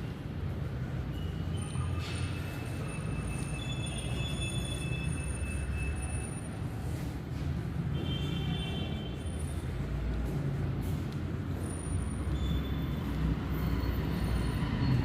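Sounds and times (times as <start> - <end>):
high-pitched squeals: 1.1 - 6.5.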